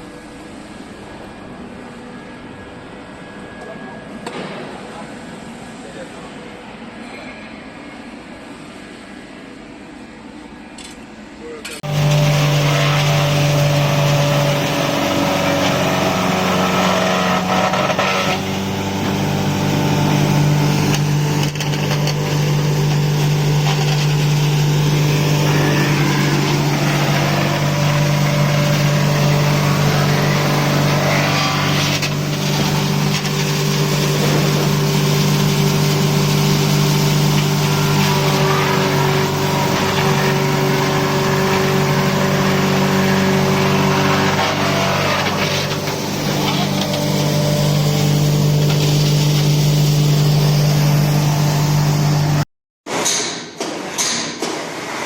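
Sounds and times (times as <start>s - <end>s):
wood crusher machine grinding: 11.8s - 52.4s.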